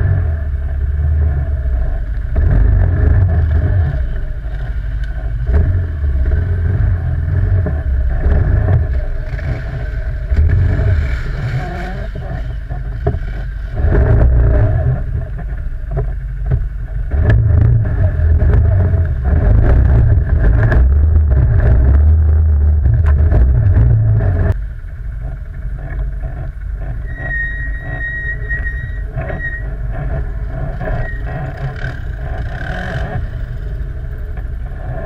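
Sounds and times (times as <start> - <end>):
quad bike engine revving: 0.0 - 24.6, 28.8 - 35.0
sharp clicks and knocks: 12.1 - 24.6.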